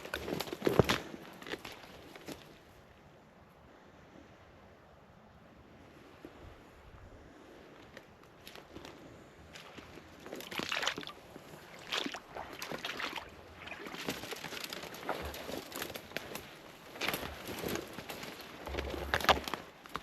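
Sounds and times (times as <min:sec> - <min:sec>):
footsteps sloshing through wet ground: 0:08.2 - 0:20.0.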